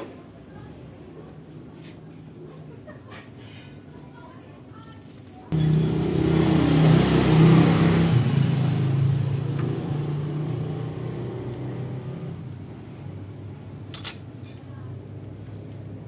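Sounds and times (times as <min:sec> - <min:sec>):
vehicle engine running: 0:05.5 - 0:13.7.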